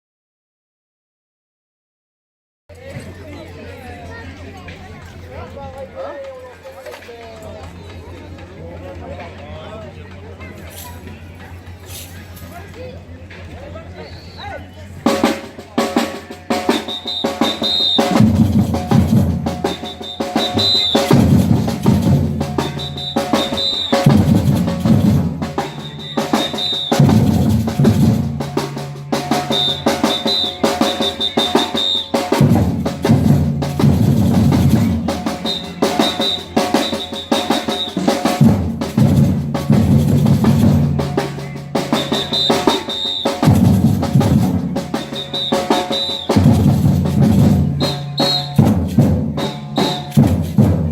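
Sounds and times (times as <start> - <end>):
deep bass drum phrases: 15.0 - 42.5, 43.1 - 50.9
percussion ensemble drumming: 15.0 - 50.9.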